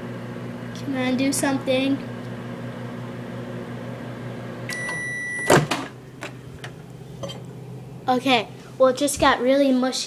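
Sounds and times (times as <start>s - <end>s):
microwave oven humming: 0.0s - 10.0s
microwave beep: 2.6s - 6.4s
loud clunk: 5.4s - 7.4s.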